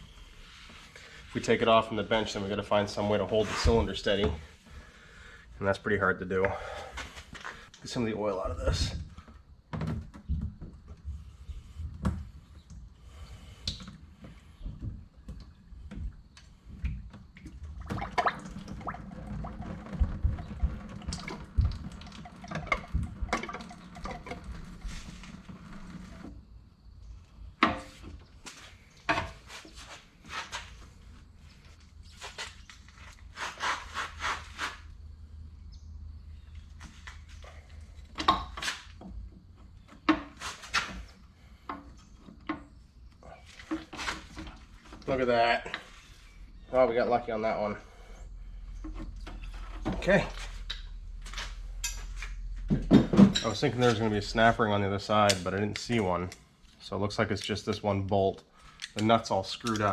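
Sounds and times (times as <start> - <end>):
metal parts and tools clanking: 49.1 - 54.6.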